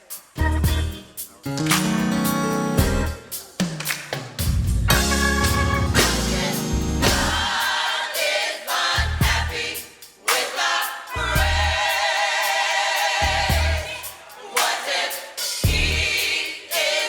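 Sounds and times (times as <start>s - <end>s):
drums: 0.0s - 17.0s
bass: 0.4s - 3.2s, 4.4s - 7.6s, 9.0s - 9.7s, 11.2s - 11.9s, 13.2s - 14.0s, 15.6s - 16.2s
gospel choir singing: 4.9s - 17.0s.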